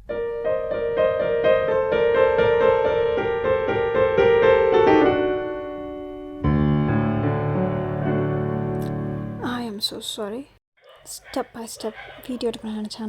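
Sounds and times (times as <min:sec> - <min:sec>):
piano music: 0:00.0 - 0:09.6.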